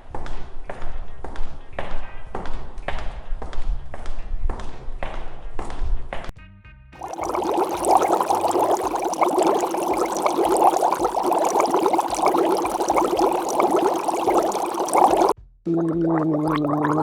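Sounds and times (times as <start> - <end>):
water pouring: 7.0 - 17.0.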